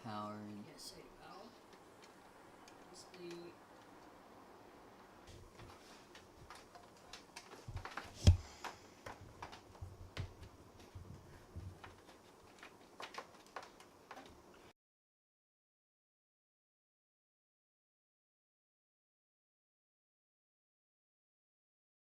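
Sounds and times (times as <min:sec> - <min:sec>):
cables and connectors clicking: 0:01.6 - 0:04.2, 0:05.5 - 0:14.6.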